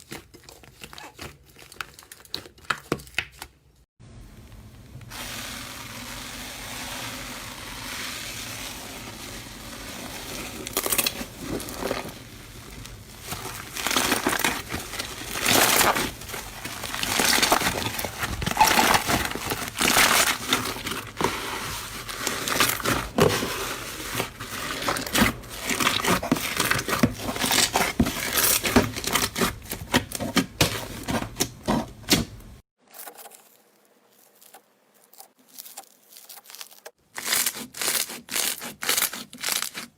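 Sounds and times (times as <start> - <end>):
slime crackling and popping: 10.1 - 21.2.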